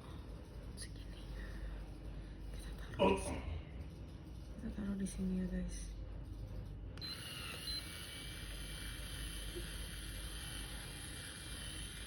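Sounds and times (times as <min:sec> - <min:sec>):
low steady hum: 0:00.0 - 0:12.0
small electric motor whirring: 0:07.0 - 0:12.0.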